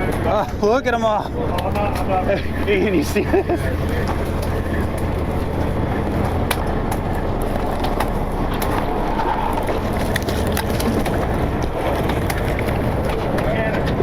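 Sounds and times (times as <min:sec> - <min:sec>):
boat engine idling: 0:00.0 - 0:14.0.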